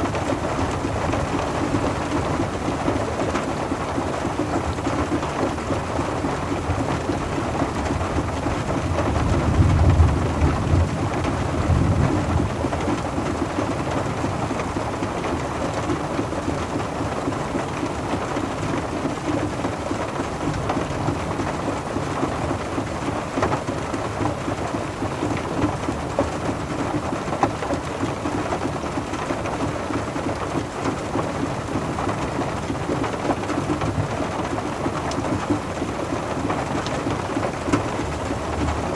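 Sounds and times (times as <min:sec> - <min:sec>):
rain falling on a car: 0:00.0 - 0:38.9
thunder rumble: 0:08.7 - 0:13.4.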